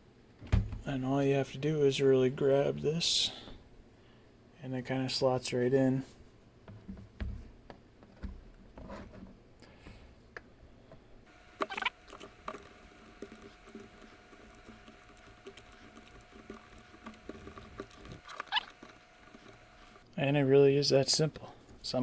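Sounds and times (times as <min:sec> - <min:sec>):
plastic parts clicking and scraping: 0:11.3 - 0:20.1.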